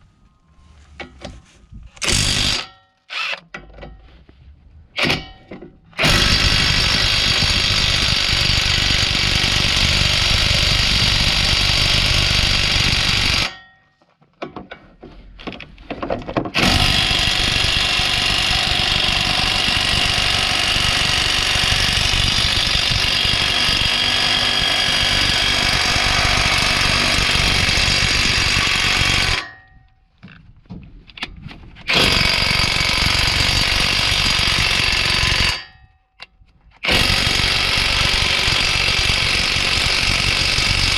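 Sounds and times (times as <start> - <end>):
impact wrench hammering: 5.0 - 13.9, 16.5 - 29.8.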